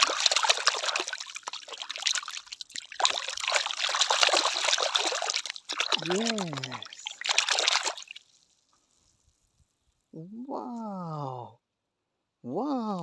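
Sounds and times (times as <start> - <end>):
water pouring and trickling: 0.0 - 9.4.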